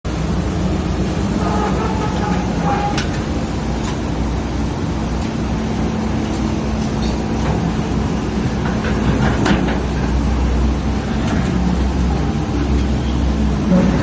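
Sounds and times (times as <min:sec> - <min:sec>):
diesel engine running: 0:00.1 - 0:14.0.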